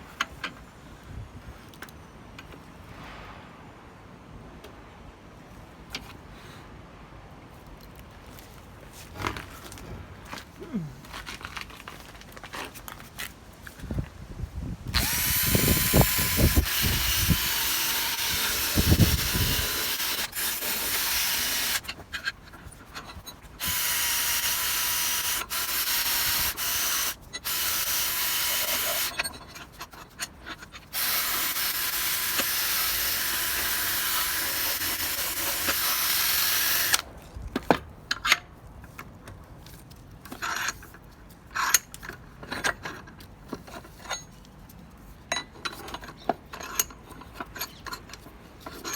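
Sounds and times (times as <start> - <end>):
power tool grinding metal: 15.0 - 22.0, 23.6 - 29.2, 30.9 - 37.0.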